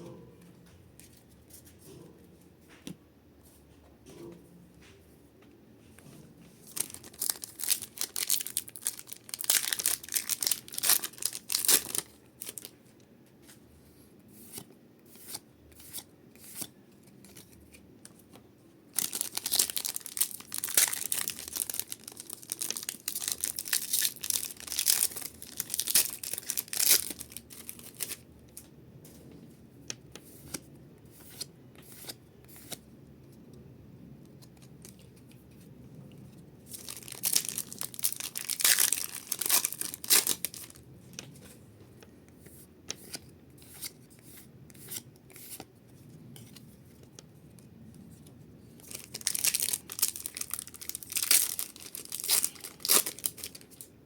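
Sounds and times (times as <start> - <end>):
foil wrappers tearing and crinkling: 6.7 - 12.7, 19.0 - 28.2, 36.7 - 40.8, 48.9 - 53.8.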